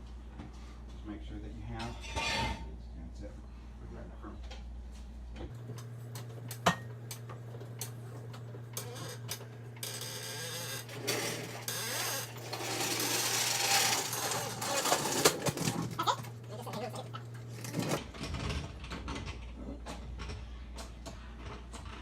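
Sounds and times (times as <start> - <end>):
metal scraping: 1.8 - 2.7.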